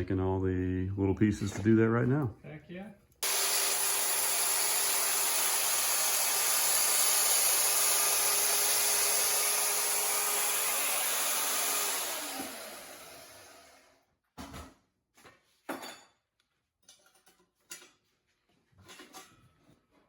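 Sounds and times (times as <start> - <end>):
power tool cutting steel: 3.2 - 14.0.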